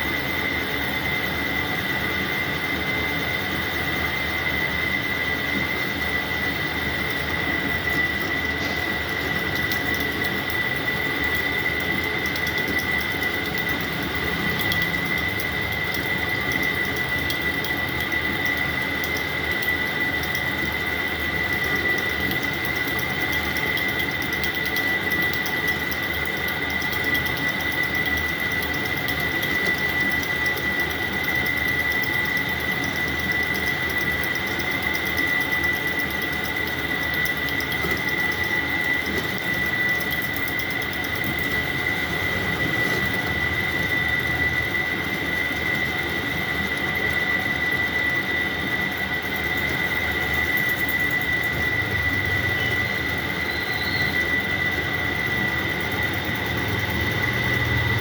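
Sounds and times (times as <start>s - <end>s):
metal lathe running: 0.0s - 58.0s
high-pitched cutting squeal: 51.8s - 54.6s.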